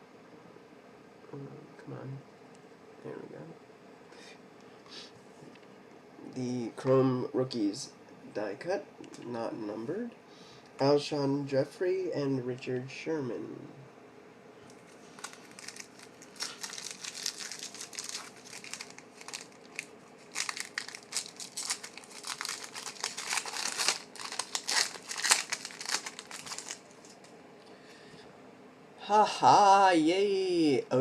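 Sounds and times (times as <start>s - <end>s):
foil wrapper crinkling and tearing: 14.9s - 27.3s.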